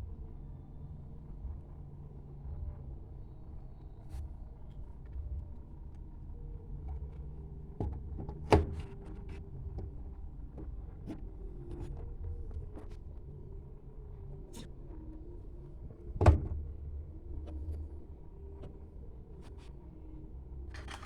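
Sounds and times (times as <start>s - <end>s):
low steady hum: 0.0s - 21.0s
tools and parts clicking: 20.7s - 21.0s.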